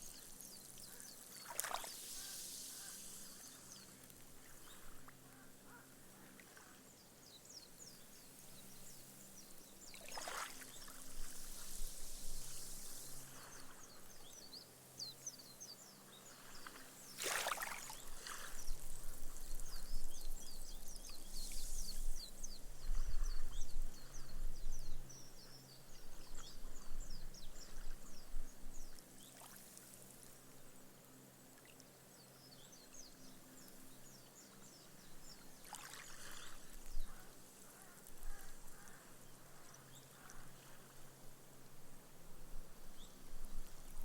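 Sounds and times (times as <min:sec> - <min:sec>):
small waves washing on sand: 0:09.9 - 0:14.1, 0:16.3 - 0:19.2, 0:35.6 - 0:36.9.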